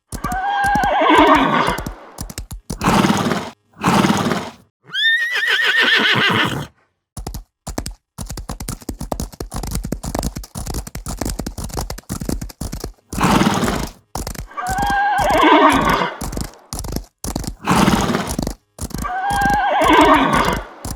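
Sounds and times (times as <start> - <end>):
horse breathy blasts: 0.0 - 4.6, 13.0 - 20.9
rapid hoofbeats: 0.0 - 4.6, 5.4 - 20.9
horse whinnying: 0.2 - 2.0, 2.8 - 6.7, 14.5 - 16.5, 19.0 - 20.8.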